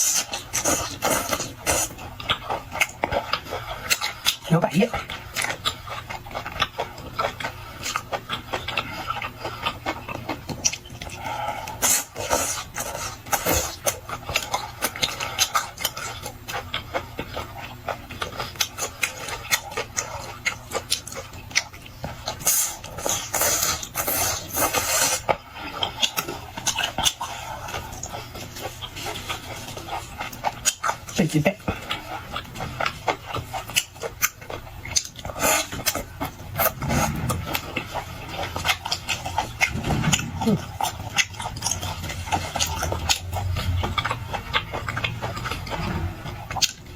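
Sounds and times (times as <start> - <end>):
crunchy chewing: 0.0 - 46.9
mouth smacking: 29.0 - 46.9.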